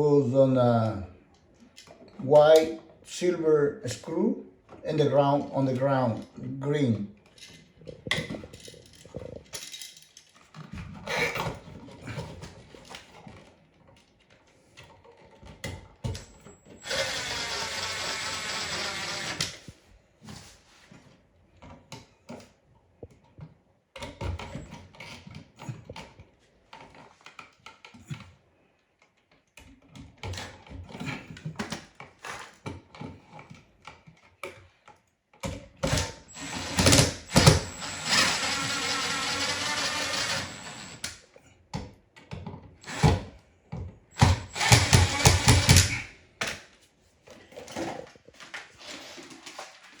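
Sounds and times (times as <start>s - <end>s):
power drill running: 16.6s - 19.6s, 35.8s - 41.1s, 42.8s - 43.3s, 44.1s - 46.0s.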